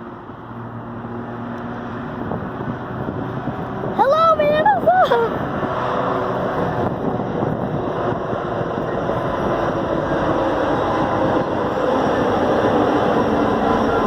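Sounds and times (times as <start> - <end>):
train wheels on rails: 6.4 - 14.0.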